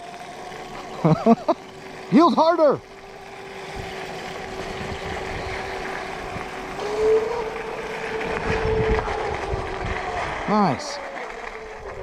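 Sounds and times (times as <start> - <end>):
electric motor whining: 0.0 - 12.0
wind rumbling on microphone: 3.4 - 12.0.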